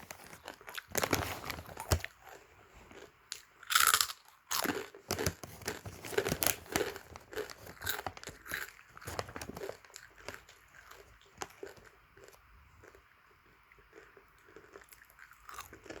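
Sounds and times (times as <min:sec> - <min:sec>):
pork crackling crunching: 0:03.0 - 0:13.0, 0:13.9 - 0:16.0.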